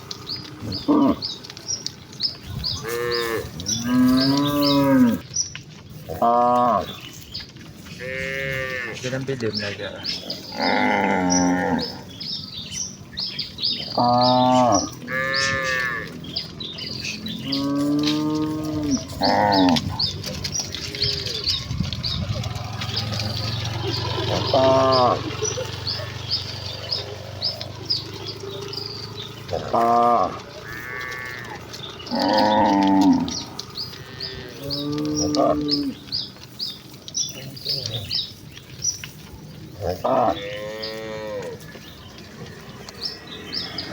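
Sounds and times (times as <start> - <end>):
cattle mooing: 0.5 - 1.6, 2.6 - 5.3, 6.0 - 7.2, 7.9 - 12.2, 13.8 - 36.3, 39.7 - 43.9.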